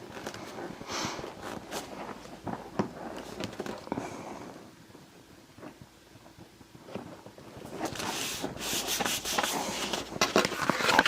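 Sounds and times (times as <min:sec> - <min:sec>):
paper rustling: 0:07.6 - 0:11.0
paper scrapes and taps: 0:07.8 - 0:11.0.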